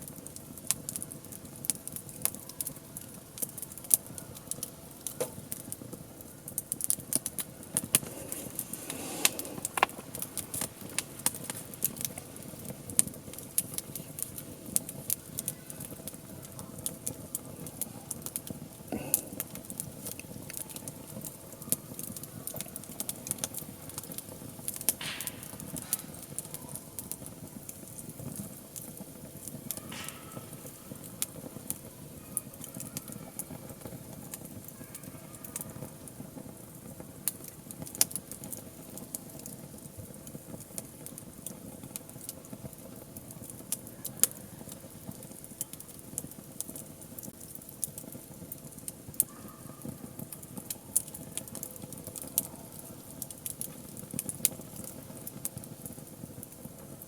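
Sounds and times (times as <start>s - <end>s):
wood fire crackling and popping: 0.0s - 57.0s
brief hisses: 7.9s - 11.3s.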